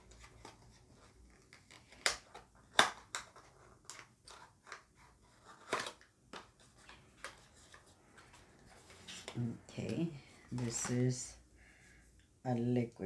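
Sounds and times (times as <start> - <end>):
packaging crinkling and rustling: 0.0 - 11.2
packaging snapping: 1.4 - 9.4.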